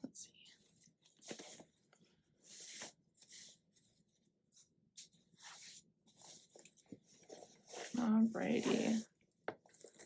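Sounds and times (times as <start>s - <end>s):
paper and plastic packaging rustling: 2.5s - 10.0s.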